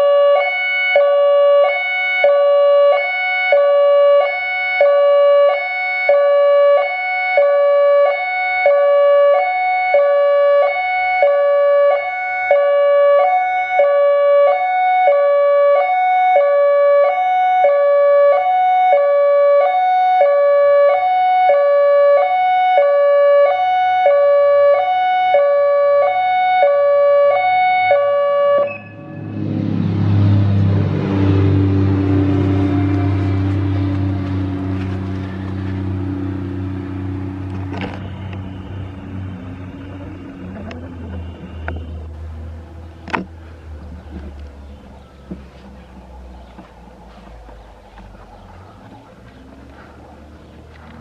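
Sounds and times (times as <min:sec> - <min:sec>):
warning siren hi-lo tone: 0:00.0 - 0:45.0
low vehicle rumble: 0:25.7 - 0:51.0.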